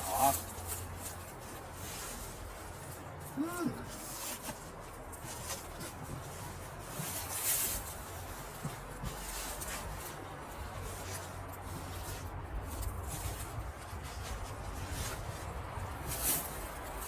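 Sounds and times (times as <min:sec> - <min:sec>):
fabric rustling: 0:00.0 - 0:17.0
wind rumble on microphone: 0:05.8 - 0:17.0.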